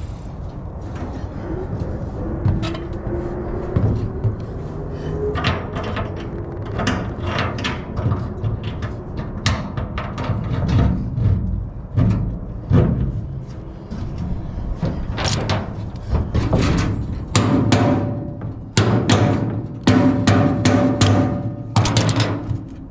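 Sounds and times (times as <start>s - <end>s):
steady low rumble: 0.0s - 22.9s
metal tank knocks and scrapes: 5.3s - 22.9s.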